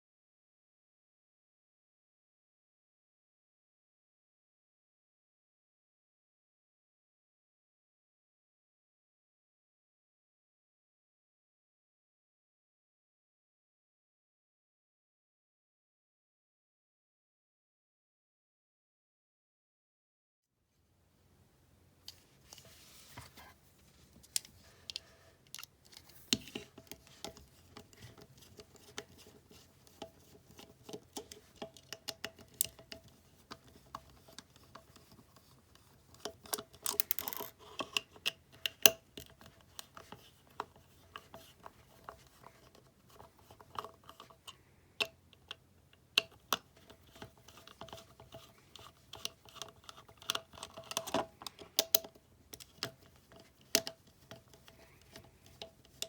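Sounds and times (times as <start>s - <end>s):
plastic parts clicking and scraping: 22.1s - 56.0s.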